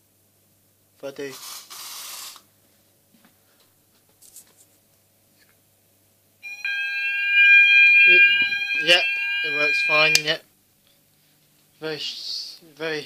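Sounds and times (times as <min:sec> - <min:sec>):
fire alarm sounding: 0:06.4 - 0:10.4.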